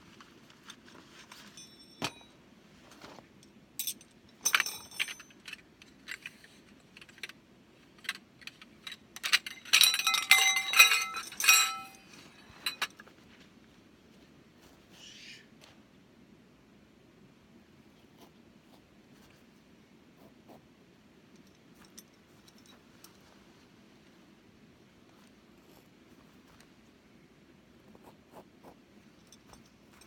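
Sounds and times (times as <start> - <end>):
metal objects clinking: 3.8 - 7.3, 8.0 - 13.0.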